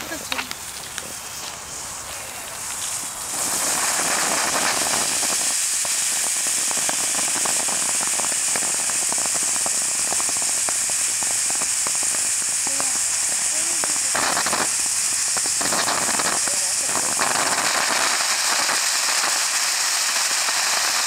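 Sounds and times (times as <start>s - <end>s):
firework fountain hissing: 0.0s - 21.0s
small crackling pops: 0.2s - 1.6s, 4.4s - 19.2s.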